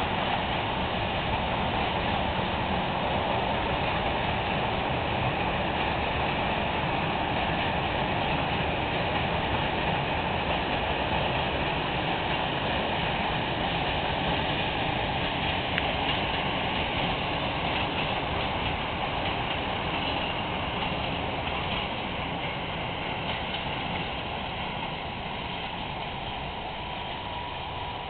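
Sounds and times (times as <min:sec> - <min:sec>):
freight train wheels on track: 0:00.0 - 0:28.0.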